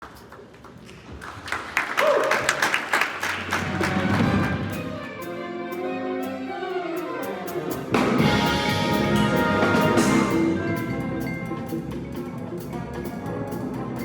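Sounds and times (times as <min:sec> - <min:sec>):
jazz band playing: 0:03.5 - 0:14.0.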